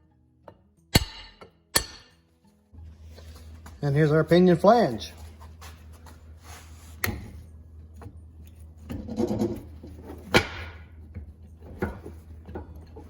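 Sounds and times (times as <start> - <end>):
sharp ringing metal clank: 1.0 - 2.2.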